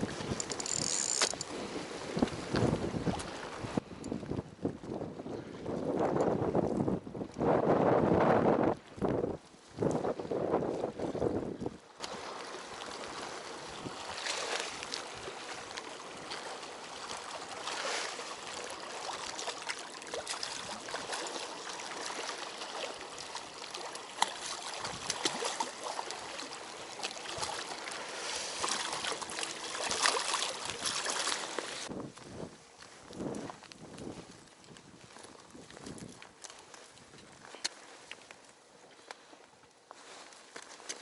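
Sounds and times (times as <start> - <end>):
flowing splashing water: 12.0 - 31.9.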